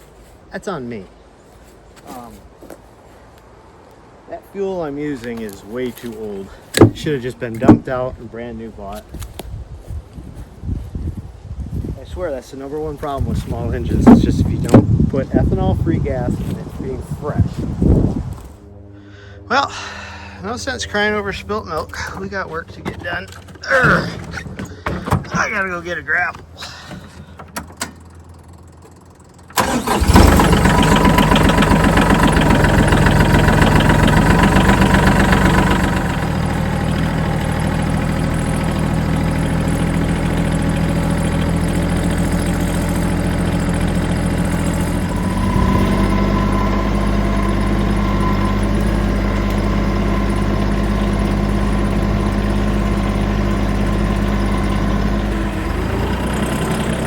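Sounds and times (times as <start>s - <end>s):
tractor engine running: 6.0s - 8.1s, 12.9s - 19.0s, 19.7s - 57.0s.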